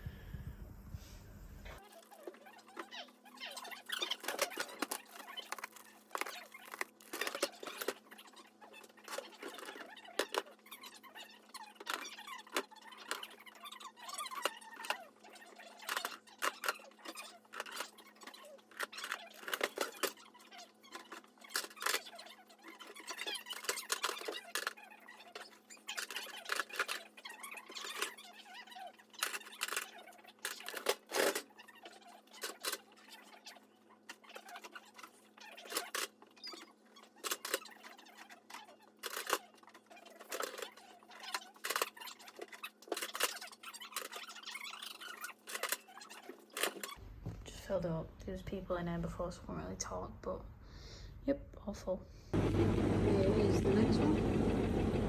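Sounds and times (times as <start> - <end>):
packets and cans rustling and clicking: 3.7 - 8.2, 8.8 - 10.5, 15.8 - 20.2, 38.9 - 47.0.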